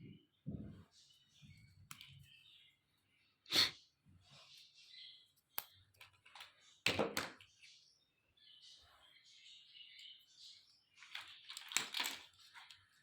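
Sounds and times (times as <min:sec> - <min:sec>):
plastic toy pieces clicking: 0:11.0 - 0:12.9.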